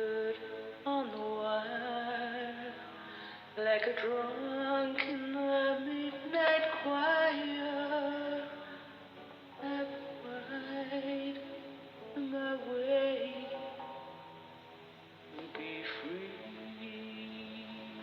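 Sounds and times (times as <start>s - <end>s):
woman singing a slow ballad: 0.0s - 8.9s, 9.6s - 14.2s.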